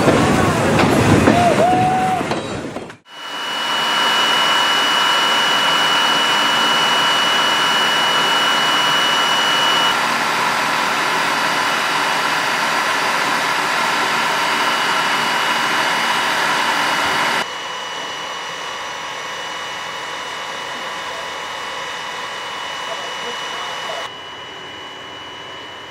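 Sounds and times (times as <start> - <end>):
steam locomotive hissing: 0.0 - 25.9
faint high whine: 3.1 - 10.0, 14.0 - 25.9.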